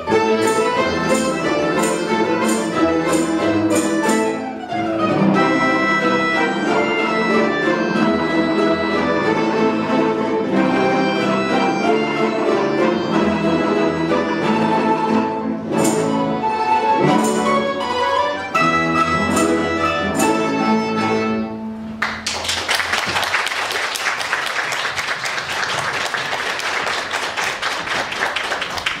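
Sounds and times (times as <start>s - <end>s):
folk instrument ensemble playing: 0.0s - 22.2s
audience applause: 22.0s - 29.0s.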